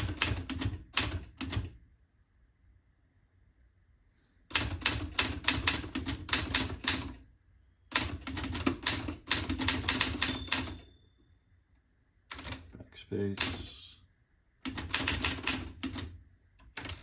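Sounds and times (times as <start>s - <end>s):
typewriter key strikes: 8.3s - 10.8s
typewriter bell ringing: 9.8s - 11.2s.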